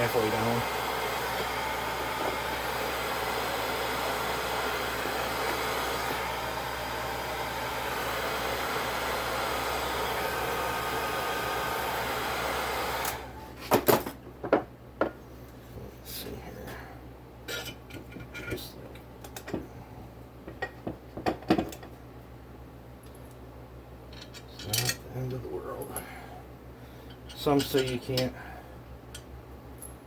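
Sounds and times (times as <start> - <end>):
heat gun blowing: 0.0 - 13.4.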